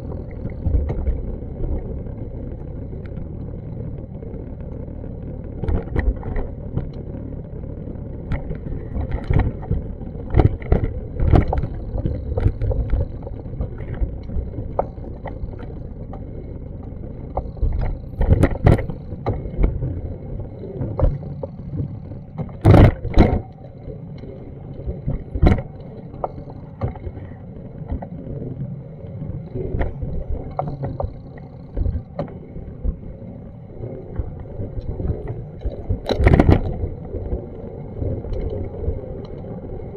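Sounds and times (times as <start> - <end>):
steady low street rumble: 0.0 - 39.9.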